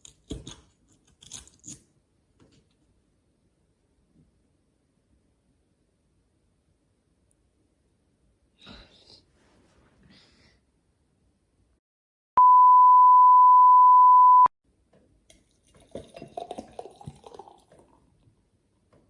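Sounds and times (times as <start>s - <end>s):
censor bleep: 12.4s - 14.5s.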